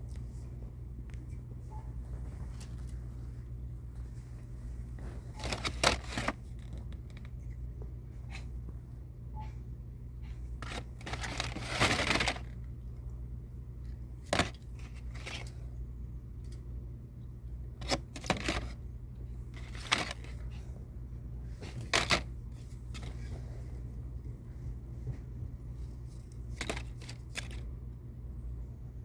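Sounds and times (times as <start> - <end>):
handling rustles and knocks: 0.0 - 9.6, 10.3 - 12.6, 14.2 - 15.6, 17.8 - 27.7
steady low hum: 0.0 - 29.0.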